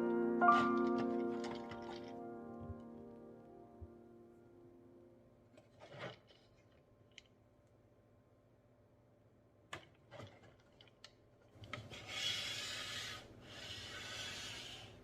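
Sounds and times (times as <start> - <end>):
rubbing scraping strokes: 11.8 - 15.0.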